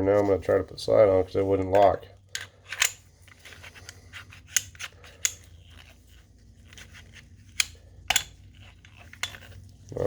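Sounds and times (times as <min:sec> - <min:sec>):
sharp metal clicks: 0:01.8 - 0:03.0, 0:07.6 - 0:08.4.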